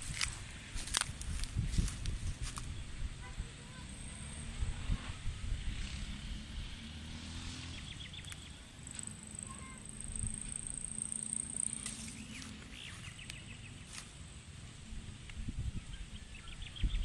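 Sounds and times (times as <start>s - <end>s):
rapid bird chirps: 7.6s - 13.9s
high insect drone: 8.6s - 12.8s.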